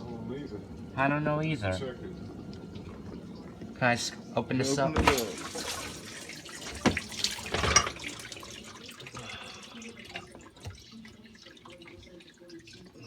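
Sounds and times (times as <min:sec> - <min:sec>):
dishwasher door knocks: 0:05.0 - 0:05.7
water splashing and dripping: 0:05.0 - 0:13.0.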